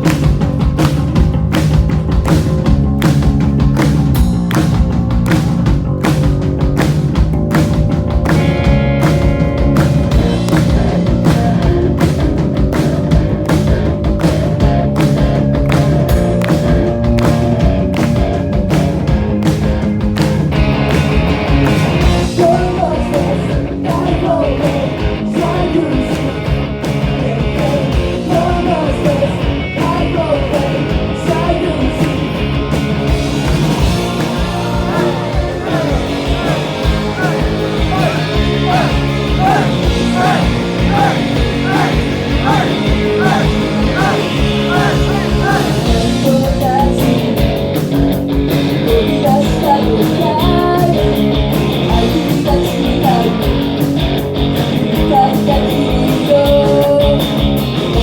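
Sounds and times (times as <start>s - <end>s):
bass guitar: 0.0s - 58.0s
electric guitar: 0.0s - 58.0s
steady drum beat: 0.0s - 58.0s
person singing lead vocal: 22.2s - 32.4s, 33.6s - 47.4s, 48.9s - 51.2s, 51.8s - 53.6s, 54.9s - 57.3s.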